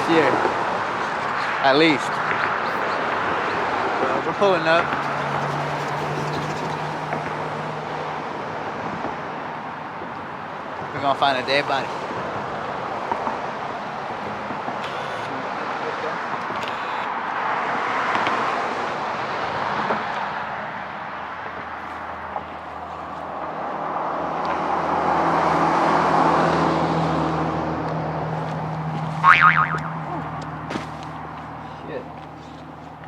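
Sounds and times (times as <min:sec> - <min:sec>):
vehicles passing by: 0:00.0 - 0:33.0
low engine hum: 0:00.6 - 0:10.6.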